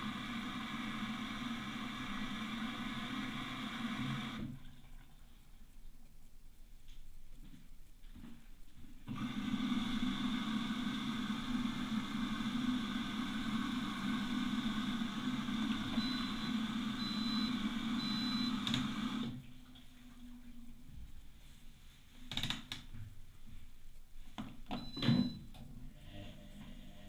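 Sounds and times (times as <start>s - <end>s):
washing machine drain pump humming: 0.0s - 5.4s, 9.0s - 21.2s
short high beeps: 16.0s - 18.6s.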